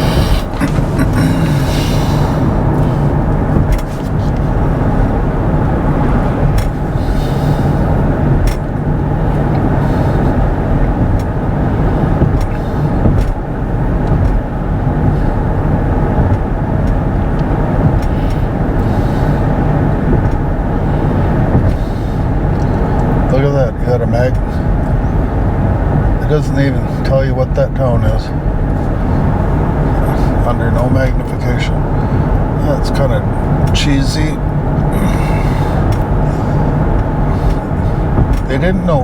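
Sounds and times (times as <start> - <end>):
road and tyre rumble: 0.0 - 39.0.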